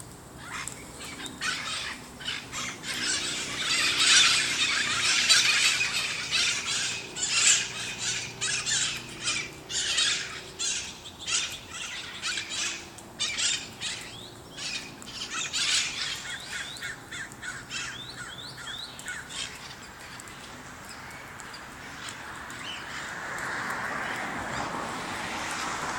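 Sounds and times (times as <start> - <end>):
parrots squawking: 0.4 - 20.3.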